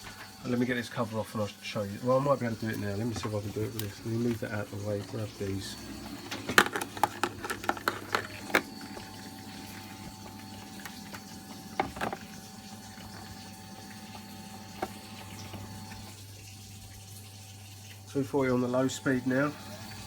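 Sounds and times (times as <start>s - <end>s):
boiler pump humming: 0.0s - 20.0s
water moving through pipes: 0.0s - 20.0s
clicks and knocks of tools: 6.0s - 9.1s.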